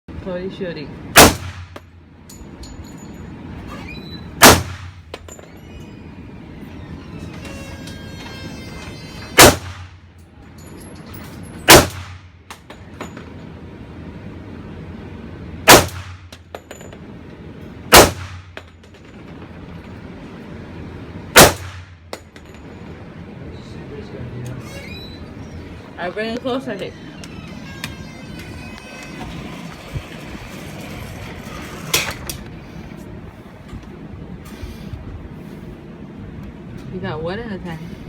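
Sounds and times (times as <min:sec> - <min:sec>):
pistol shots: 0:01.2 - 0:01.8, 0:04.4 - 0:05.0, 0:09.4 - 0:10.0, 0:11.7 - 0:12.3, 0:15.7 - 0:16.3, 0:17.9 - 0:18.5, 0:21.4 - 0:22.0.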